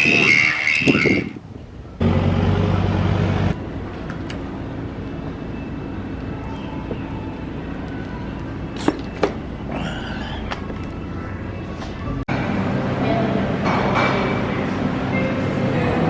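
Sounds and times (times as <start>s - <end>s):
vehicle engine running: 2.0s - 5.4s.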